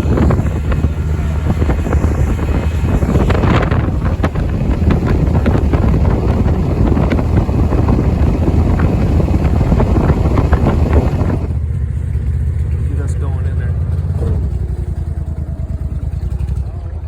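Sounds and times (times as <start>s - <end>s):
wind buffeting microphone: 0.0s - 13.2s
motorboat running at speed: 0.0s - 17.0s.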